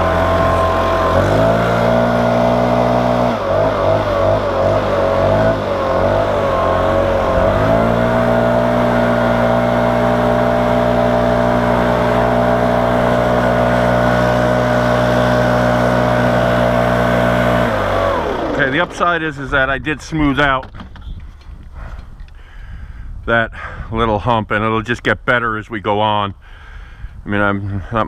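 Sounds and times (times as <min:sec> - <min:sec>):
chainsaw cutting wood: 0:00.0 - 0:18.9.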